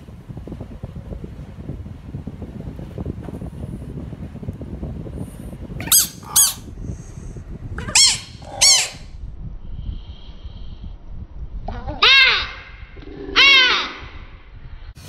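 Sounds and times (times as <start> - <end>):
steady low rumble: 0.0 - 13.4, 14.0 - 15.0
harsh animal calls: 5.8 - 6.7, 7.8 - 9.1, 11.8 - 14.2.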